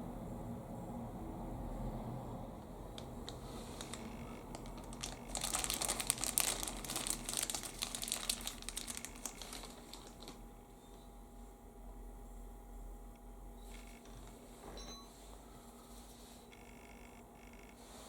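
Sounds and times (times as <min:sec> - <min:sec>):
packaging crinkling: 0:02.9 - 0:10.4.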